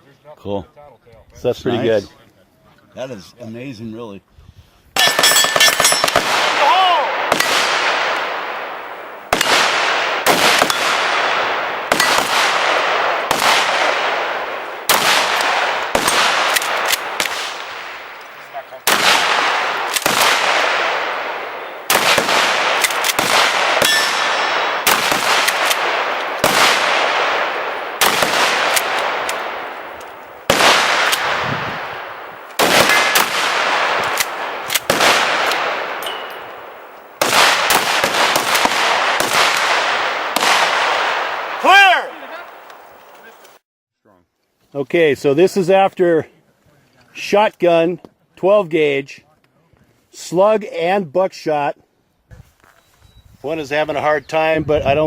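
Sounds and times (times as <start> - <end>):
echoing gunshots: 5.0 - 43.0.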